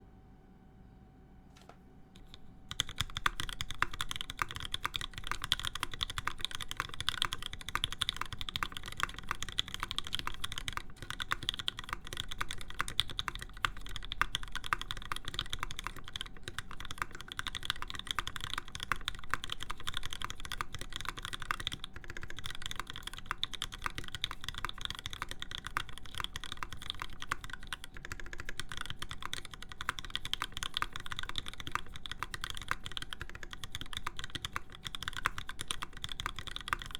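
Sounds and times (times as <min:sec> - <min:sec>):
fast typing on mechanical keyboard: 0:02.2 - 0:36.9.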